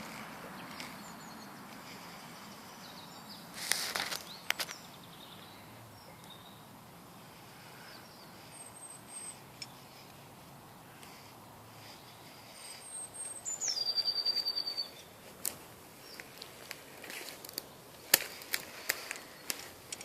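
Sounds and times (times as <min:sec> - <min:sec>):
birds chirping: 0:00.0 - 0:20.0
outdoor background noise: 0:00.0 - 0:20.0
loud rustle: 0:03.6 - 0:04.7.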